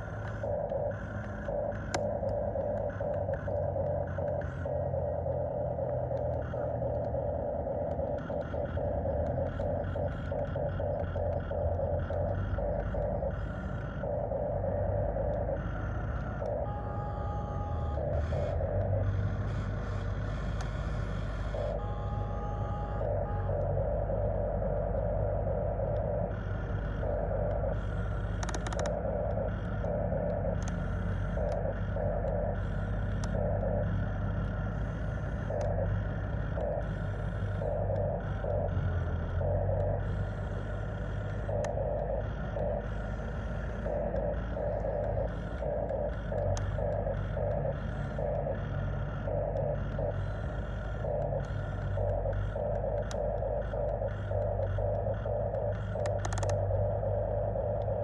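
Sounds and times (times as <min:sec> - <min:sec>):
steady low hum: 0:00.0 - 0:58.0
sharp clicks and scrapes: 0:28.3 - 0:29.0.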